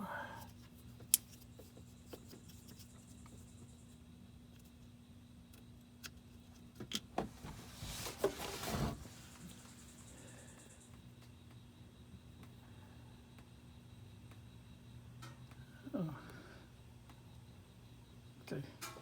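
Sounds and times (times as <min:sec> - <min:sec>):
rustling and scraping: 0:07.2 - 0:10.1.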